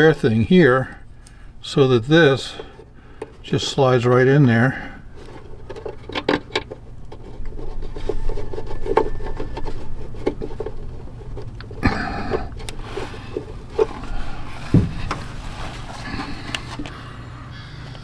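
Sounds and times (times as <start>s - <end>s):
metal scraping and rubbing: 5.1s - 16.9s
metal hardware clicks and knocks: 5.2s - 7.8s.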